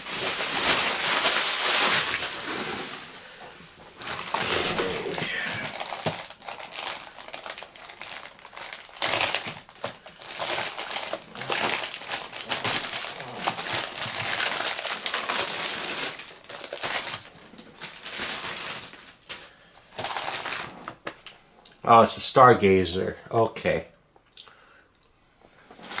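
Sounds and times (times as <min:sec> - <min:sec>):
packaging and paper rustling: 0:00.0 - 0:03.3, 0:04.0 - 0:21.3.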